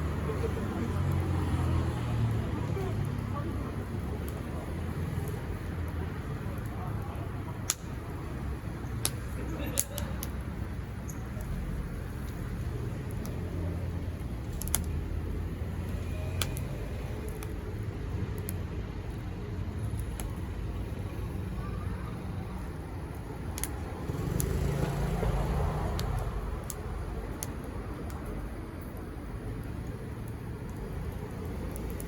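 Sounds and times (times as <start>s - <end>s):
wood fire crackling: 0.0s - 32.0s
sharp pops: 7.6s - 8.0s.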